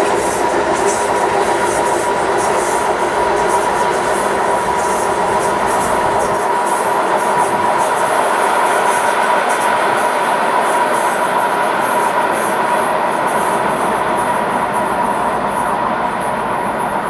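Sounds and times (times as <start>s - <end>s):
train rolling past: 0.0s - 17.0s.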